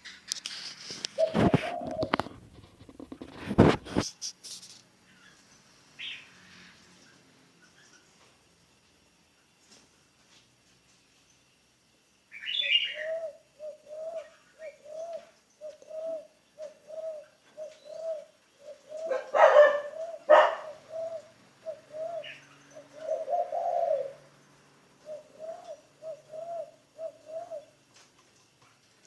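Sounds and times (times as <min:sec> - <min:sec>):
dove cooing: 0:01.0 - 0:04.0, 0:12.4 - 0:27.9
small bird chirp: 0:12.3 - 0:24.2.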